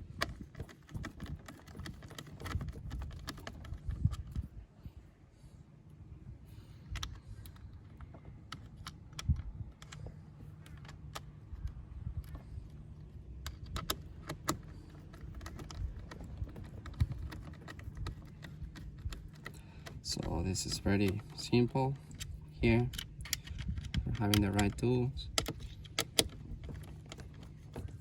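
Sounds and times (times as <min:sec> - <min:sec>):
low steady hum: 0:00.0 - 0:28.0
plastic parts clicking: 0:06.9 - 0:12.4, 0:13.4 - 0:28.0.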